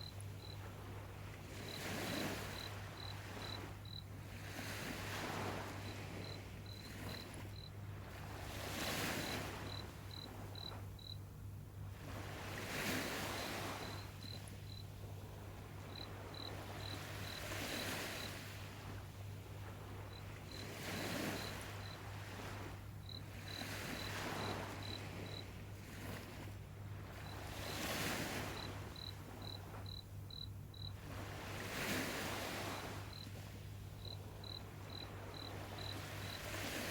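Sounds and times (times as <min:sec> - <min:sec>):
cricket chirping: 0:00.0 - 0:11.3, 0:12.9 - 0:26.2, 0:27.1 - 0:36.9.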